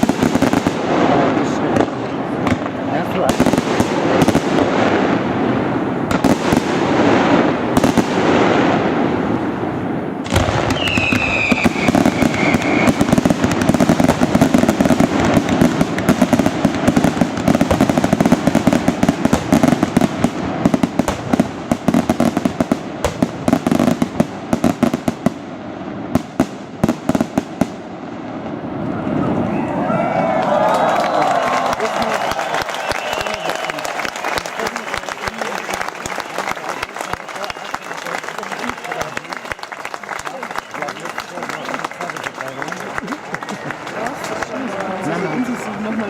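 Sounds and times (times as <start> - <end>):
fireworks crackling and popping: 0.0 - 29.9, 31.2 - 46.0
loud firework bang: 10.2 - 25.4
falling whistling tone: 10.8 - 13.0.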